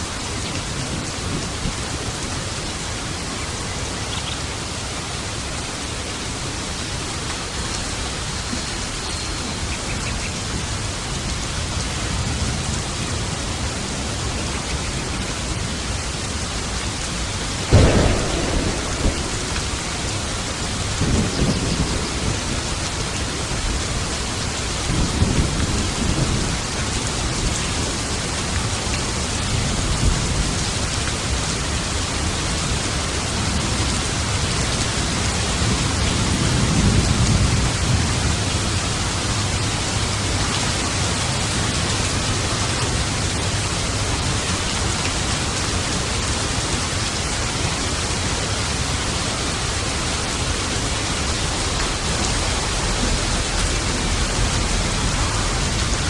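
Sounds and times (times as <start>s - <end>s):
steady rain: 0.0s - 56.0s
low rolling thunder: 15.1s - 31.4s, 49.5s - 56.0s
sharp thunderclap: 17.6s - 26.6s, 50.4s - 56.0s.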